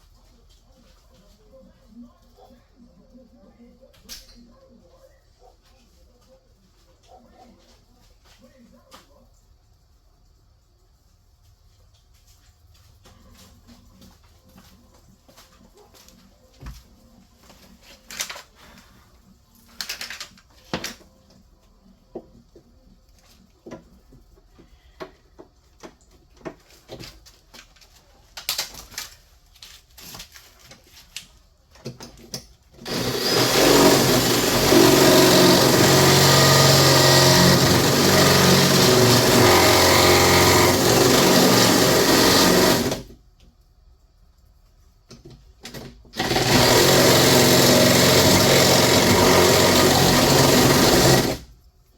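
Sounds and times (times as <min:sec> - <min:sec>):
electric drill boring: 0:32.8 - 0:43.0, 0:46.2 - 0:51.4.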